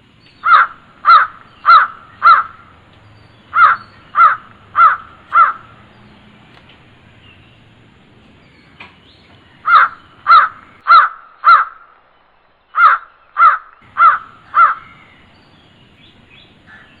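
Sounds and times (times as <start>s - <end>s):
crow cawing: 0.4s - 2.8s, 3.4s - 6.0s, 9.6s - 12.0s, 12.8s - 15.2s, 16.7s - 17.0s.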